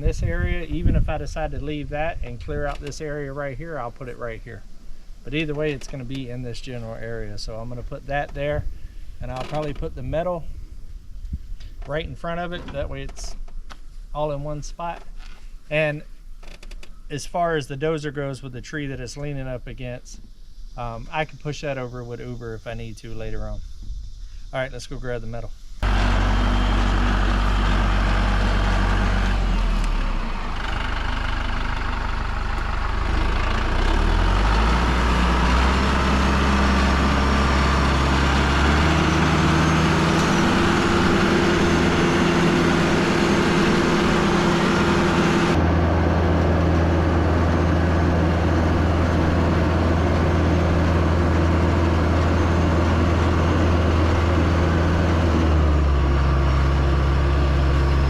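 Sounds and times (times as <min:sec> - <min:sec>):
vehicle engine running: 0:25.8 - 0:58.0.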